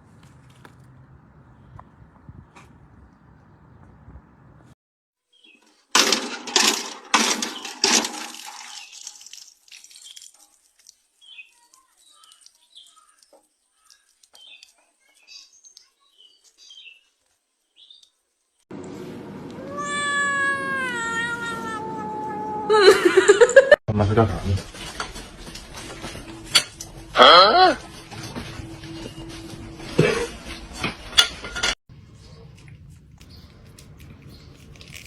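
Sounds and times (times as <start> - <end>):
cat yowling: 19.5 - 22.9.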